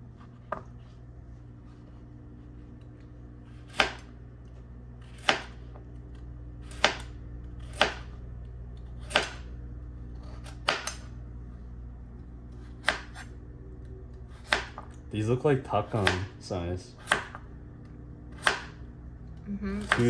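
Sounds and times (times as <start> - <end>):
steady low hum: 0.0 - 20.0
knife chopping on cutting board: 3.5 - 4.1, 5.0 - 5.8, 6.6 - 8.2, 9.0 - 9.5, 10.2 - 11.1, 12.6 - 13.3, 14.3 - 15.0, 15.8 - 16.4, 17.0 - 17.5, 18.3 - 18.8, 19.8 - 20.0.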